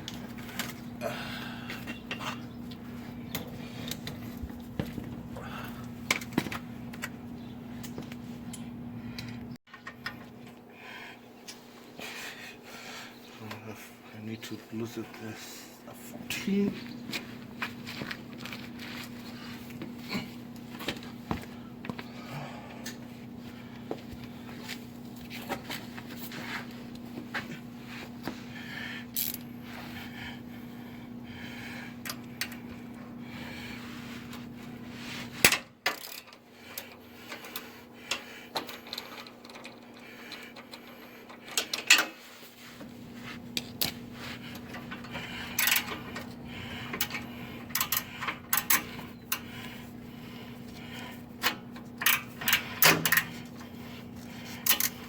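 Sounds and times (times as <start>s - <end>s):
steady low hum: 0.0s - 55.0s
metal tools clinking on metal: 1.6s - 4.3s, 35.4s - 42.2s, 46.9s - 49.5s, 51.4s - 53.6s, 54.6s - 55.0s.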